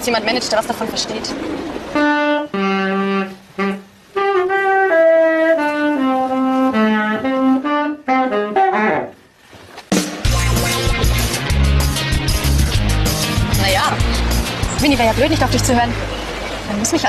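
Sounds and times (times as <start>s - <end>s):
saxophone slow melody: 2.0s - 9.4s
band music with drums and bass: 9.9s - 15.6s.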